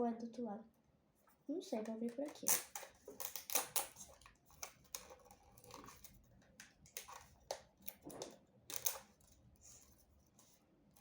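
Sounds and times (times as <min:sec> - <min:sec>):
packaging clicking and crinkling: 0:02.1 - 0:09.8.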